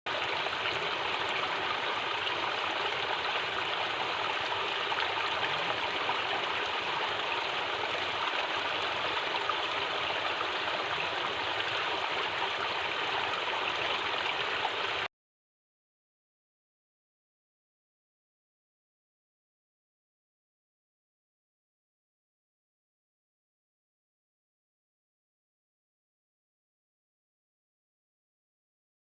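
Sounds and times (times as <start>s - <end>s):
stream water rushing: 0.1s - 15.1s.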